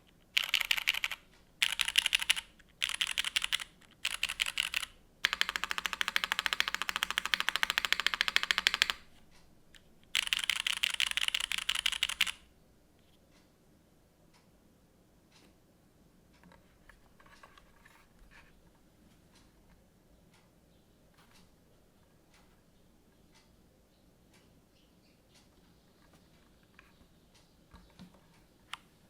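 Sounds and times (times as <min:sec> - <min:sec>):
mechanical keyboard typing: 0:00.3 - 0:09.1, 0:10.1 - 0:12.4.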